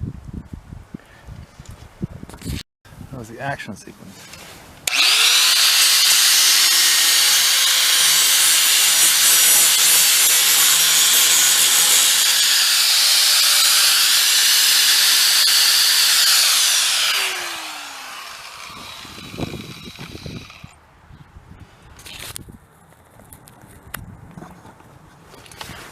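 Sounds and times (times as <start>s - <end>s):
angle grinder grinding steel: 4.9s - 20.8s.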